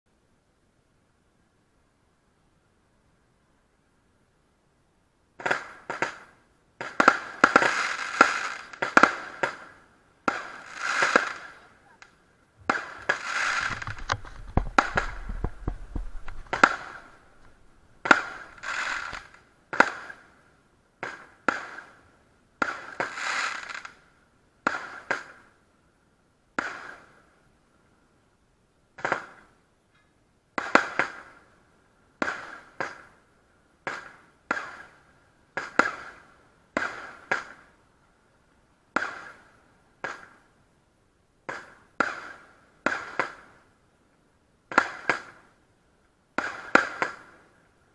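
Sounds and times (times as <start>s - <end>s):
fireworks banging: 5.4s - 20.3s, 22.6s - 24.0s, 33.8s - 37.7s, 38.9s - 40.4s, 41.4s - 43.6s, 46.4s - 47.4s.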